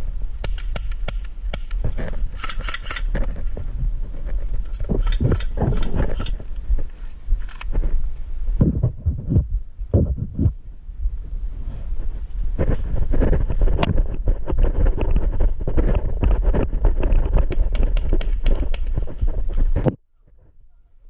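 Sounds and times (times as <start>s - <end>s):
sharp clicks and snaps: 0.4s - 3.2s
wind rumble on microphone: 1.0s - 20.8s
dull low thumps: 3.1s - 20.0s.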